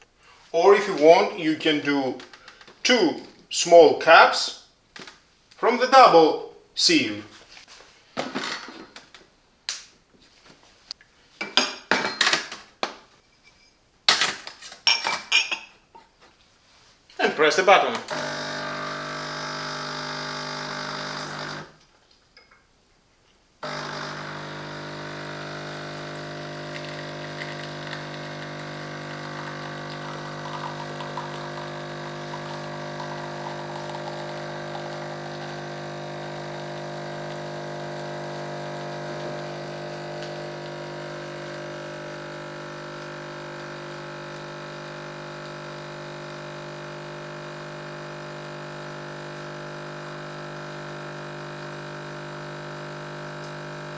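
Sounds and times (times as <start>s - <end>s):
espresso machine pump humming: 18.1s - 21.8s, 23.6s - 53.9s.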